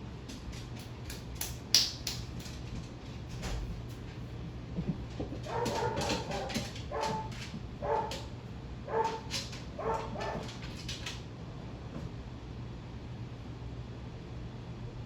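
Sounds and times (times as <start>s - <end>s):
steady low hum: 0.0s - 15.0s
dog barking and whining: 5.4s - 10.6s.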